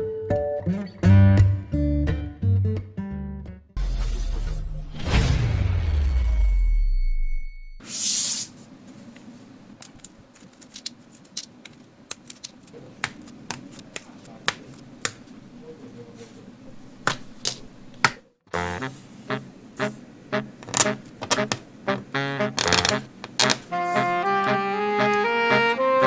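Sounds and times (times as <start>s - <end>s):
wooden parts clicking: 22.6s - 23.6s.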